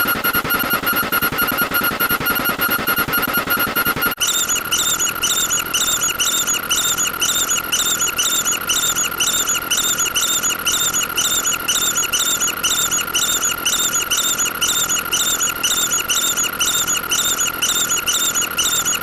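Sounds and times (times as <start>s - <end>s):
high-pitched squeaks: 0.0s - 10.3s.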